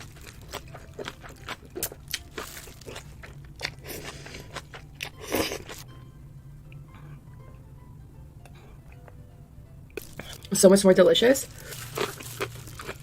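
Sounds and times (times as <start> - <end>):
crunchy chewing: 0.0 - 5.8, 11.4 - 13.0.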